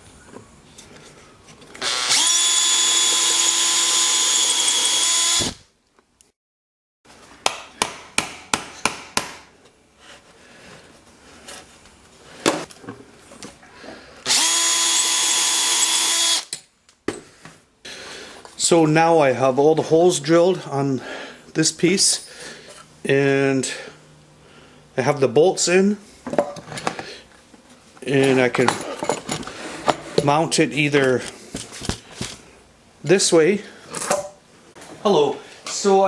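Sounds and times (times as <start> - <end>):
small drill whining: 1.8 - 5.6, 14.2 - 16.5.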